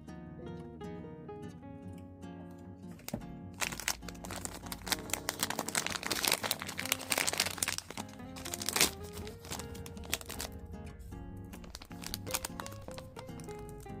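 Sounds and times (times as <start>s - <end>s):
background music: 0.0s - 14.0s
plastic packaging crinkling: 3.0s - 10.6s, 11.5s - 14.0s.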